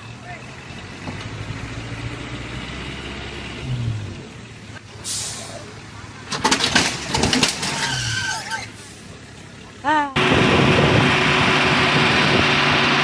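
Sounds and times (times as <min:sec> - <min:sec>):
heavy truck engine running: 0:00.0 - 0:07.8, 0:08.6 - 0:13.0
loud clattering and banging: 0:06.3 - 0:08.1.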